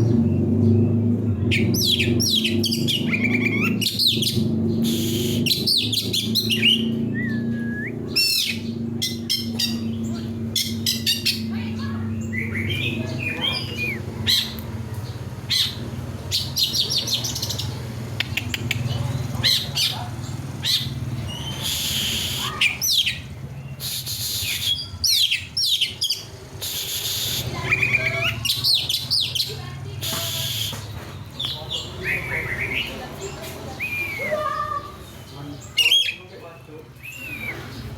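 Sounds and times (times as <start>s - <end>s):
harsh rasping bird calls: 1.5s - 37.9s
bird singing whistled notes: 1.6s - 11.5s, 20.6s - 29.4s, 30.0s - 33.0s, 33.7s - 36.2s, 37.0s - 37.9s.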